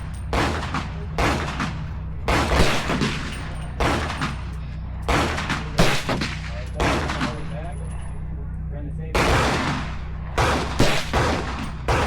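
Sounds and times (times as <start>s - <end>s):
rifle shots echoing: 0.0s - 7.6s, 9.2s - 12.0s.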